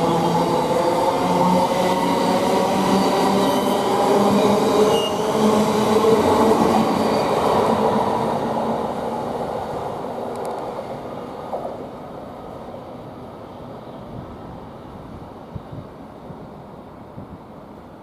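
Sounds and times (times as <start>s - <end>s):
train wheels on rails: 0.0s - 12.1s.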